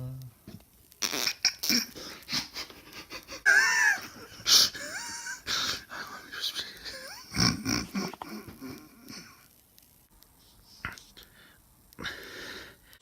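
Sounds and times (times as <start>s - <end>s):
person puffing and snorting: 1.0s - 3.1s, 7.3s - 9.4s.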